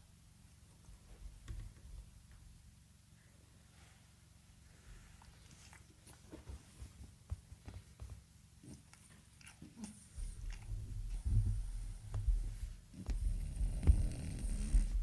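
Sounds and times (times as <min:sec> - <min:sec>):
dog chewing: 0:08.6 - 0:11.5
dog breathing low rumble: 0:09.8 - 0:15.0.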